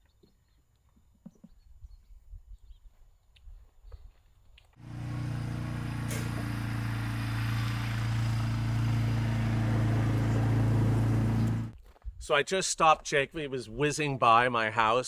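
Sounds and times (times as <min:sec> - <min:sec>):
vehicle engine idling: 0:04.8 - 0:11.8.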